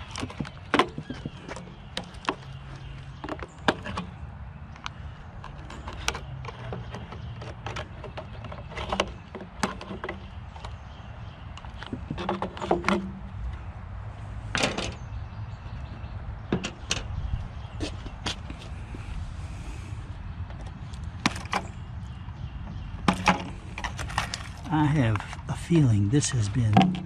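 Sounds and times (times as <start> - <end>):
steady low rumble: 13.1 - 26.7.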